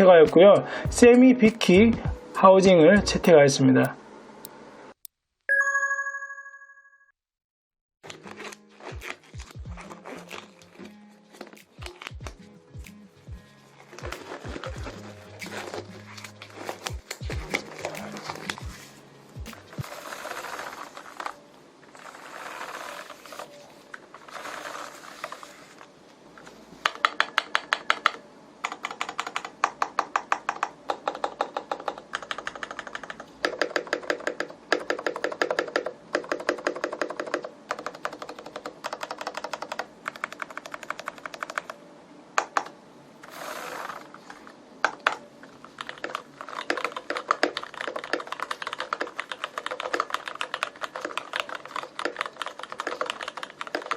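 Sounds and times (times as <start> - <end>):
typing on mechanical keyboard: 13.9 - 18.8, 26.8 - 41.8, 44.8 - 53.9.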